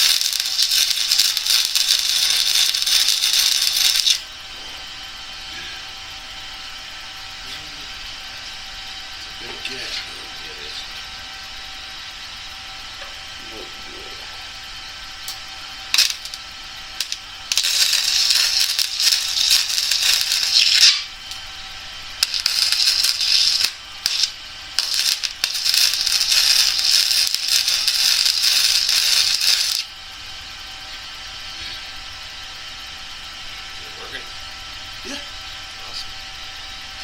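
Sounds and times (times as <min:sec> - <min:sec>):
welder arc crackling: 0:00.0 - 0:04.4, 0:12.9 - 0:30.1.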